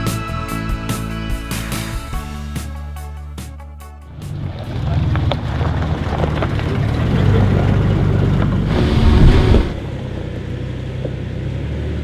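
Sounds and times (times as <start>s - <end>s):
car engine working hard: 4.3s - 12.0s.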